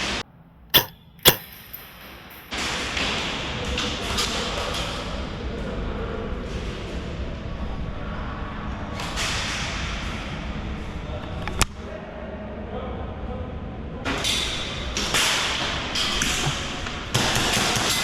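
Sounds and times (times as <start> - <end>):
airsoft gun shot: 0.8 - 1.6.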